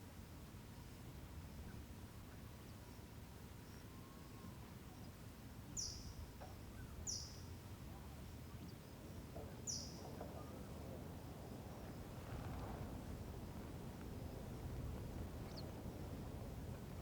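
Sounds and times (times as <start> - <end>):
outdoor background hiss: 0.0 - 17.0
bird chirping: 9.6 - 10.1.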